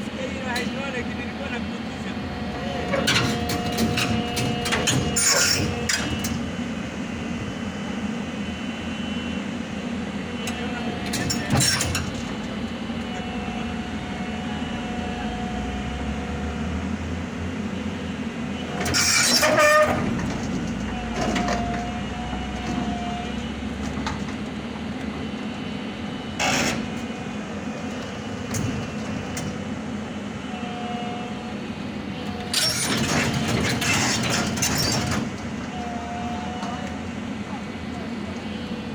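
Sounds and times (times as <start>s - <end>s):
excavator diesel engine running: 0.0s - 38.9s
faint squealing tones: 2.6s - 6.4s, 18.8s - 21.8s.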